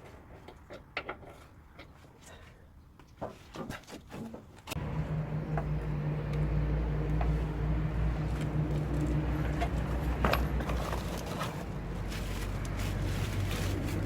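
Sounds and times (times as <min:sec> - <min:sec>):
pickup engine idling: 0:04.8 - 0:12.0.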